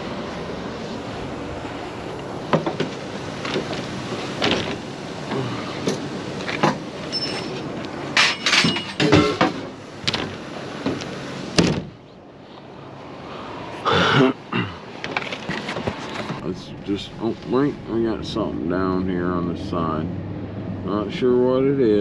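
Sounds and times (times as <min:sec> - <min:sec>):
metal knocks and rattles: 0:02.5 - 0:04.8, 0:07.4 - 0:11.0
vehicle engine running: 0:16.1 - 0:22.0.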